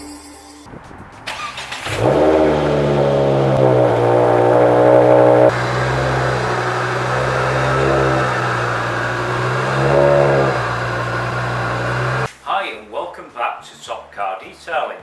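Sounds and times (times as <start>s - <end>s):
car engine revving: 1.3s - 12.3s.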